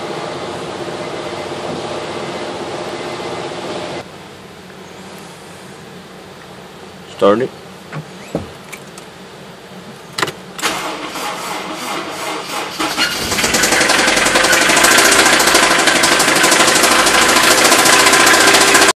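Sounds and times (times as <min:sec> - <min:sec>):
car engine cranking and starting: 0:10.6 - 0:18.9
engine heavy knocking: 0:13.1 - 0:18.9.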